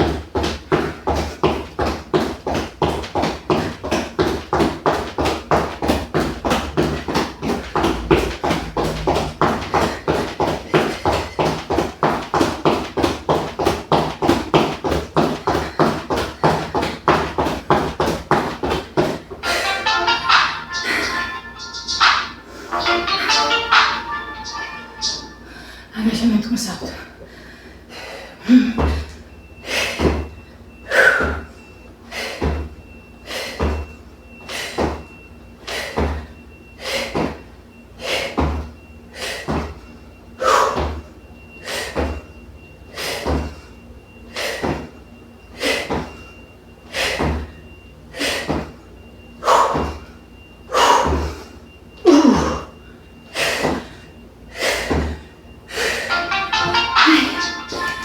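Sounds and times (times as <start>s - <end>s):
feet thudding on floor: 0.0s - 19.7s, 32.4s - 32.8s, 33.5s - 33.9s, 34.5s - 35.1s, 35.7s - 36.3s, 37.0s - 37.4s, 38.3s - 38.7s, 40.7s - 41.0s, 44.6s - 44.9s, 47.1s - 47.5s.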